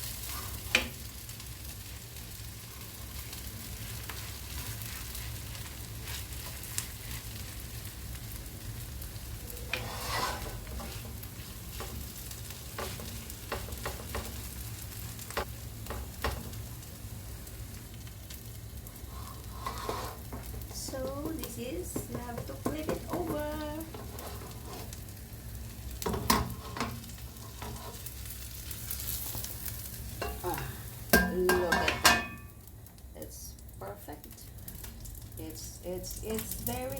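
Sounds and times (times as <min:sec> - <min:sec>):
hash browns sizzling in a pan: 0:00.0 - 0:36.9
low steady hum: 0:16.5 - 0:36.9.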